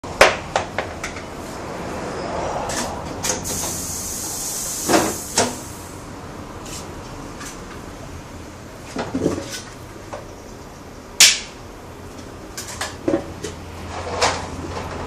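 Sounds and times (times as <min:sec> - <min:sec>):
steady air hiss: 0:03.4 - 0:06.1.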